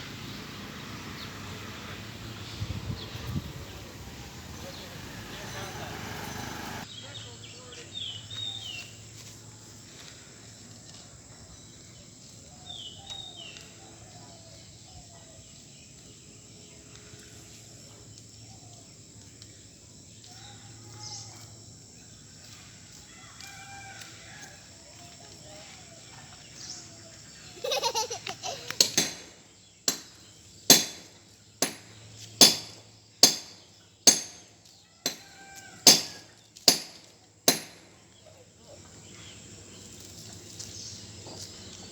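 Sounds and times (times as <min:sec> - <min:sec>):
sharp knocks: 0:28.8 - 0:30.1, 0:30.7 - 0:34.5, 0:35.9 - 0:37.9.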